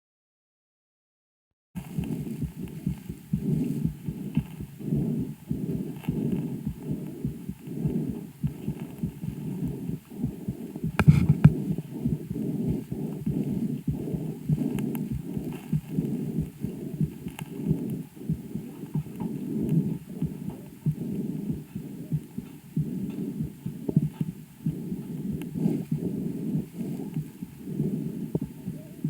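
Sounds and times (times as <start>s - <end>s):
heartbeats: 1.8s - 29.0s
low breath sounds: 1.8s - 29.0s.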